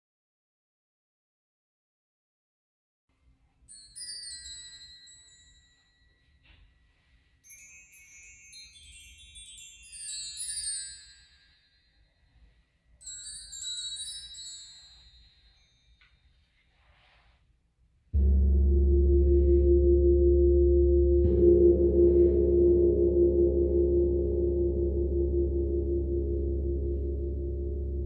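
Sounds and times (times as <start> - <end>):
metal chimes tinkling: 3.7 - 6.4, 7.4 - 12.2, 12.9 - 16.3.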